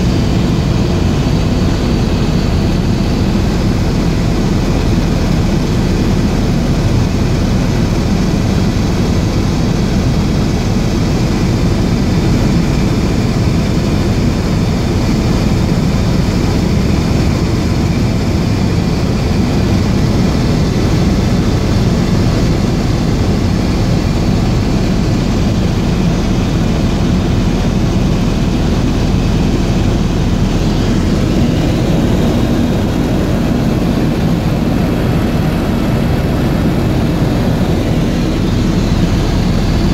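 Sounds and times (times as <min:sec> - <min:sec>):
faint steady whine: 0:00.0 - 0:39.9
helicopter rotor and engine: 0:00.0 - 0:39.9.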